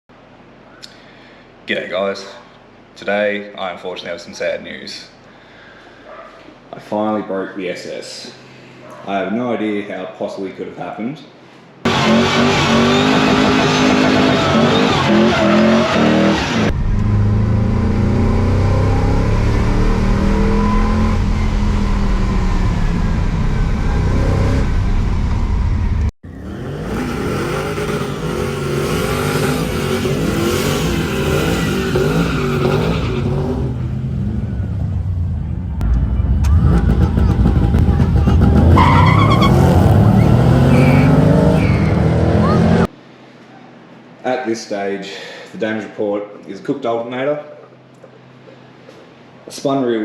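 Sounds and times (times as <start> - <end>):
car engine revving and accelerating: 11.9 - 34.6, 36.5 - 42.9.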